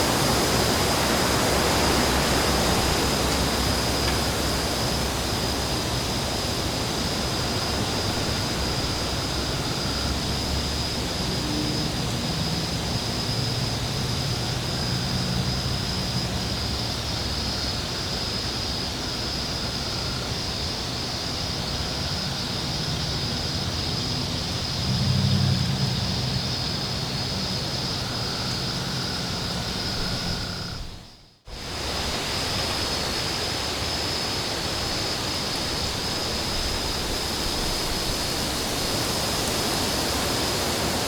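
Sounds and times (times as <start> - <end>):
low engine-like drone: 0.0 - 31.1
wind rushing hiss: 0.0 - 41.0.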